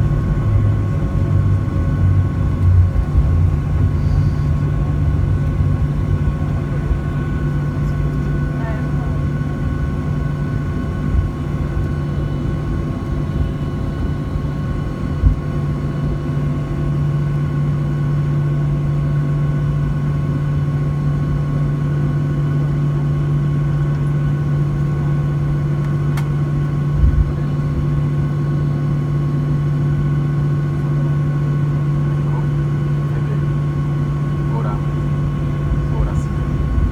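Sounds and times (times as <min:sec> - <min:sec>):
jet engines droning in cabin: 0:00.0 - 0:36.9.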